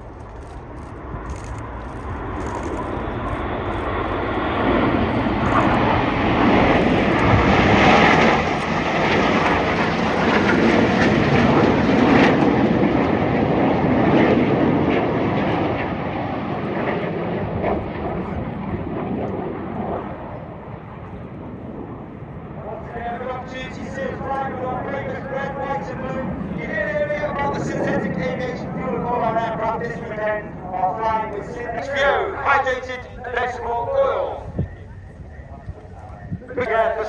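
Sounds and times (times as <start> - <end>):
jets flying past: 0.1 - 37.0.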